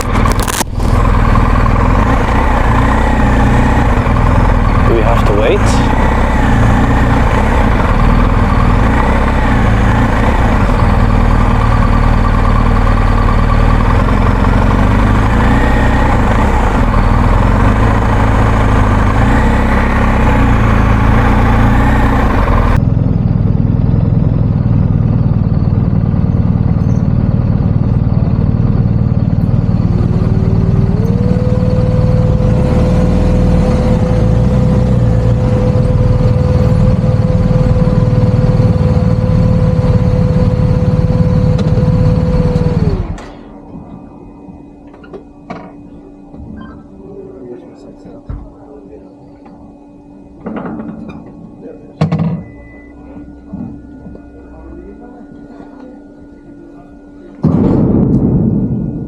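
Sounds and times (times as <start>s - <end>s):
motorcycle engine rumbling: 0.0s - 59.0s
steady whine: 0.0s - 59.0s.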